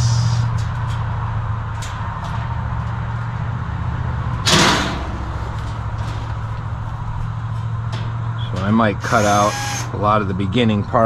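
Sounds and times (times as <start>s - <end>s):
steady low hum: 0.0s - 11.0s
loud metal clatter: 4.2s - 8.7s
sheet metal panels handled: 4.4s - 8.7s.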